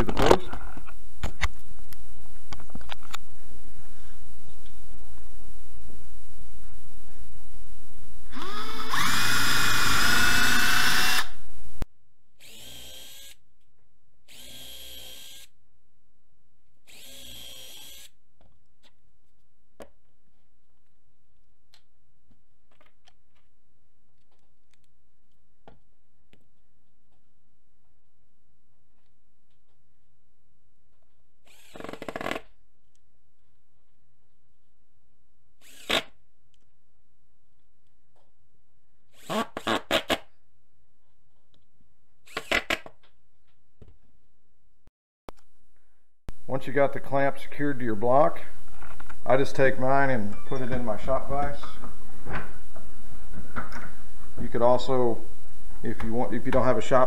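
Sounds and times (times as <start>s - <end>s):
drill driving screws: 8.3s - 11.4s, 12.4s - 13.4s, 14.3s - 15.5s, 16.9s - 18.2s, 31.4s - 32.5s, 35.6s - 36.2s, 39.2s - 40.3s, 42.3s - 42.9s
electric drill drilling wood: 8.3s - 11.4s, 12.4s - 13.4s, 14.3s - 15.5s, 16.9s - 18.1s, 31.5s - 32.4s, 35.6s - 36.2s, 42.3s - 42.9s.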